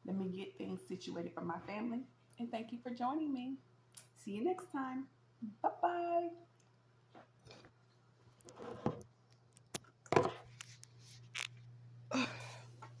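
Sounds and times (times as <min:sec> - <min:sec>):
steady low hum: 0:05.0 - 0:13.0.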